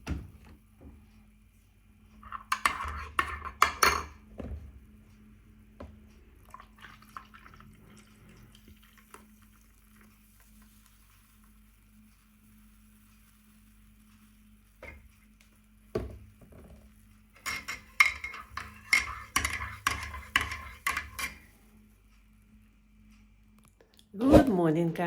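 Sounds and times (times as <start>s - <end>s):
dishes and cutlery clattering: 2.2s - 4.2s, 17.4s - 21.4s.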